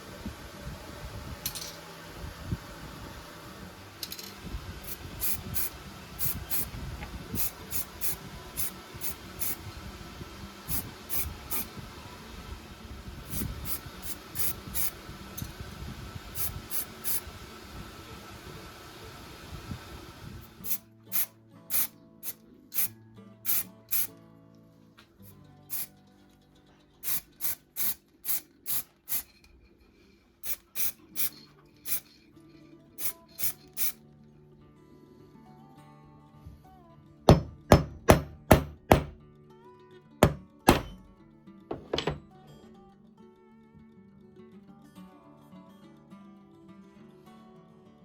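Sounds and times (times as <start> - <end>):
short hissing strokes: 4.8 - 9.6, 20.6 - 22.9, 27.0 - 32.2, 33.0 - 34.0.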